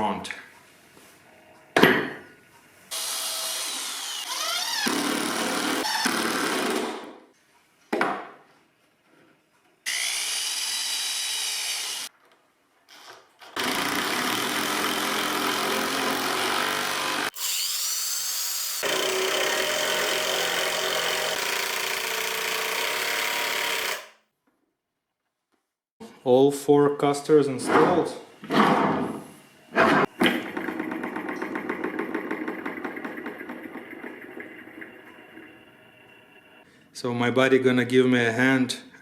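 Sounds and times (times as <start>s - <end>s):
power drill whining: 3.0s - 6.8s, 18.8s - 24.2s.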